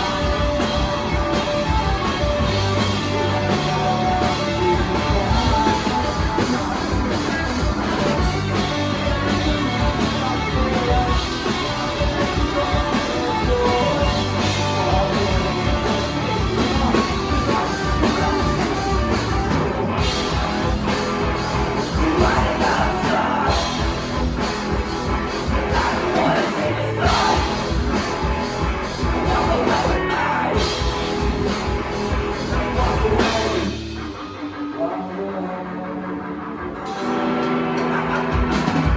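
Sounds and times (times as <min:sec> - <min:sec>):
bass guitar: 0:00.0 - 0:38.9
drums: 0:00.0 - 0:38.9
electric guitars: 0:00.0 - 0:38.9
person singing: 0:21.8 - 0:24.0, 0:25.5 - 0:28.0, 0:29.1 - 0:31.0, 0:32.5 - 0:33.8.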